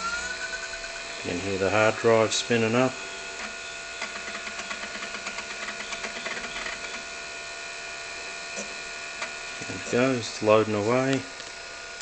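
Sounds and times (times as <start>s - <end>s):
hard drive humming: 0.0s - 12.0s
drive heads chattering ticks: 3.4s - 7.1s.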